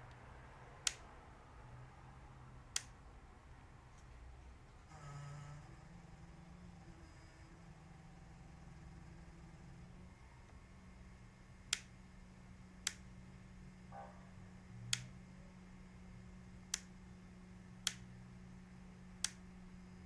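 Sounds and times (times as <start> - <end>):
low electrical hum: 0.0 - 20.0
sharp single clicks: 0.8 - 1.1, 2.7 - 3.0, 11.6 - 12.0, 12.8 - 13.1, 14.8 - 15.2, 16.6 - 17.0, 17.8 - 18.2, 19.2 - 19.5.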